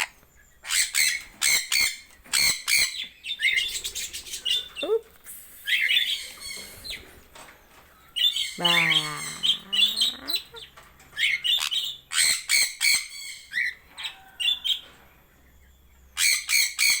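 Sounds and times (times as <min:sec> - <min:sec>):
parrots squawking: 0:08.2 - 0:14.2.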